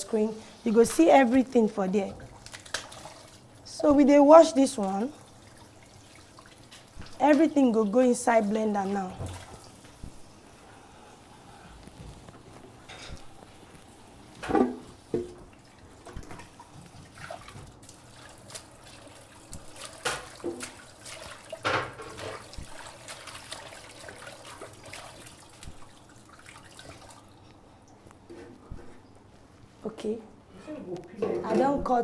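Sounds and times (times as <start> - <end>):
hand washing in water splashing: 0.0 - 10.4, 14.4 - 27.4.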